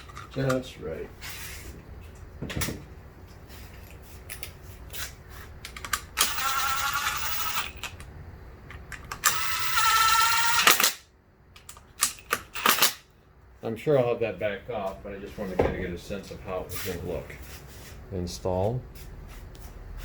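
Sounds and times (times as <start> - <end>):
power driver motor whining: 6.0 - 8.2, 9.1 - 11.0.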